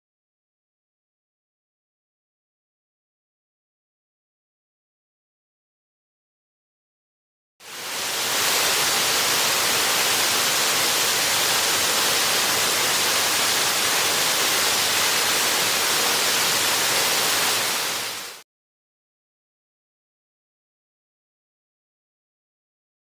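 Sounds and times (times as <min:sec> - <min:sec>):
waterfall roaring: 0:07.6 - 0:18.4.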